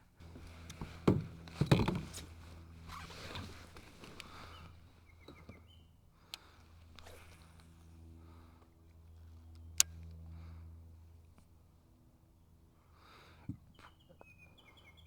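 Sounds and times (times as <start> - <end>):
steady low hum: 0.0 - 15.0
rustling and clicks: 0.2 - 4.8.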